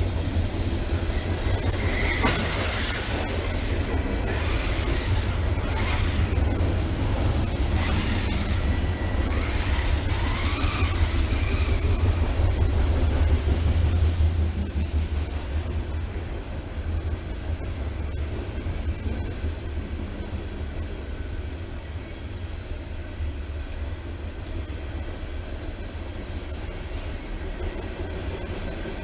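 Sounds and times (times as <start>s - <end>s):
low rumble and tyre noise: 0.0s - 29.0s
electric motor whining: 9.3s - 12.1s.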